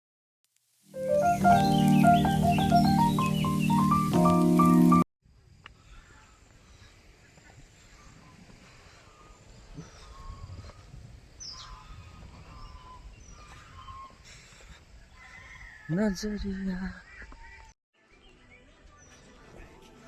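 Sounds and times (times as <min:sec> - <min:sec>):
birds chirping: 0:01.0 - 0:05.0, 0:05.9 - 0:15.5.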